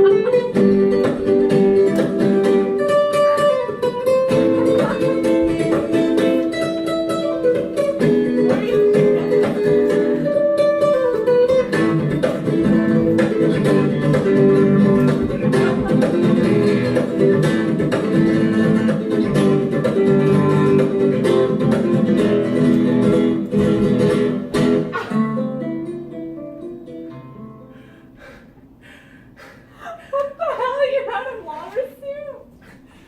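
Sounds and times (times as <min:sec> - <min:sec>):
acoustic guitar music: 0:00.0 - 0:28.2.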